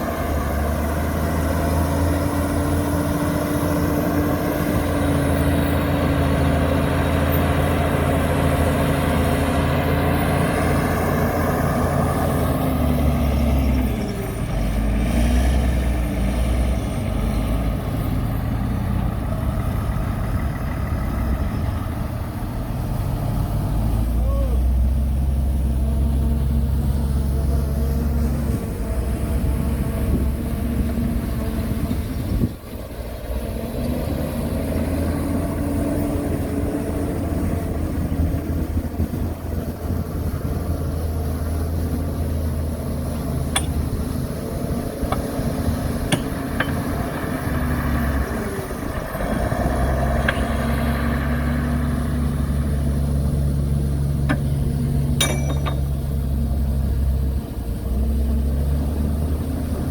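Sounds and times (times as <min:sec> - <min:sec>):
heavy diesel engines droning: 0:00.0 - 0:59.9
sharp metallic clanks: 0:43.5 - 0:44.1, 0:46.0 - 0:47.1, 0:50.2 - 0:50.7, 0:55.1 - 0:56.1.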